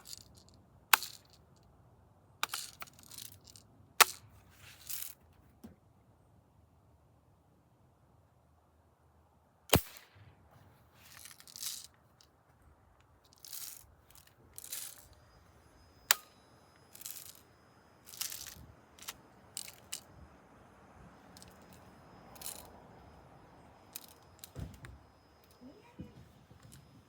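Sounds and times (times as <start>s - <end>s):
bb gun shots: 9.7s - 10.3s.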